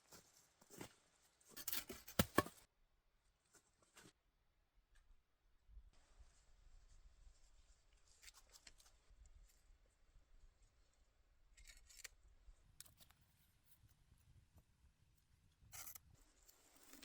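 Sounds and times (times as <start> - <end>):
faint rustles and clicks: 6.0 - 10.0.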